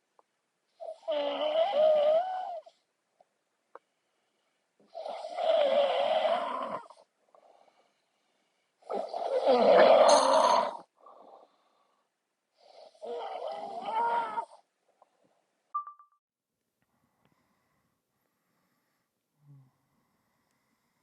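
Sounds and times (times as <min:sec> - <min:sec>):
heavy snoring: 0:00.8 - 0:02.8, 0:04.8 - 0:07.9, 0:08.8 - 0:12.0, 0:12.6 - 0:14.7
soft breaths: 0:02.5 - 0:04.9, 0:07.0 - 0:09.2, 0:10.8 - 0:13.0, 0:16.8 - 0:21.0.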